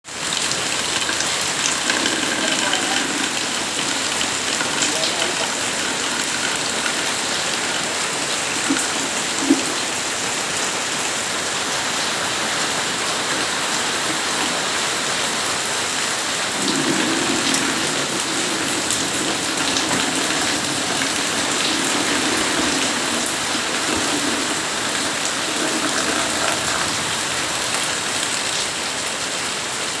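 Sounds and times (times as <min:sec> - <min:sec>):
steady rain hiss: 0:00.1 - 0:30.0.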